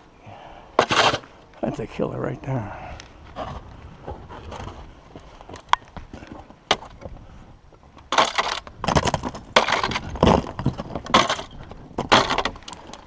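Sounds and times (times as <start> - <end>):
snow shovel scraping snow: 0.8 - 1.3.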